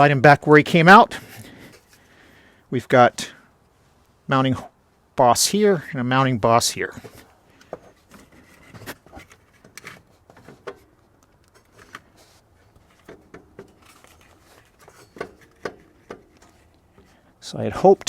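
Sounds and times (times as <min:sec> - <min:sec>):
faint metal clicks knocks and scrapes: 0:07.0 - 0:17.2.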